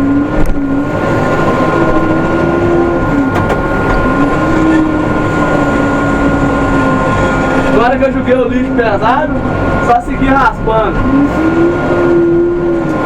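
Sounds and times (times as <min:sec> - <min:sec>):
diesel engine running under load: 0:00.0 - 0:13.0
steady high whine: 0:00.0 - 0:13.0.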